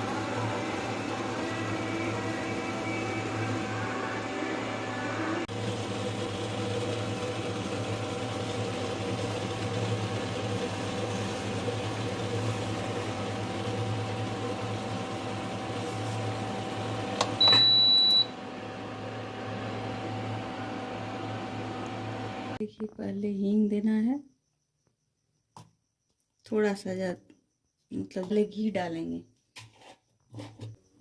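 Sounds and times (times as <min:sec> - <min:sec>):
induction cooktop fan humming: 0:00.0 - 0:22.6
cooktop high beep: 0:17.3 - 0:18.4.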